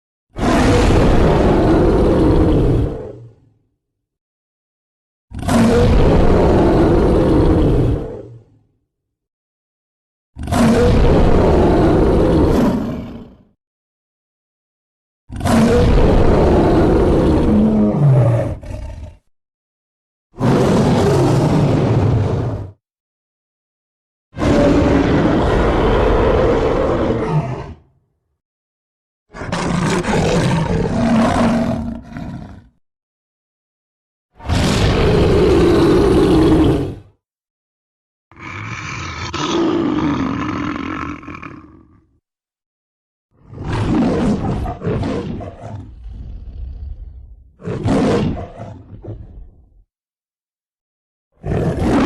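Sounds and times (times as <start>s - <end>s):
big cat roars: 0.4s - 3.6s, 5.3s - 8.7s, 10.4s - 13.5s, 15.3s - 19.3s, 20.4s - 22.8s, 24.4s - 28.0s, 29.3s - 32.8s, 34.4s - 37.2s, 38.3s - 42.2s, 43.4s - 49.8s, 51.4s - 52.0s.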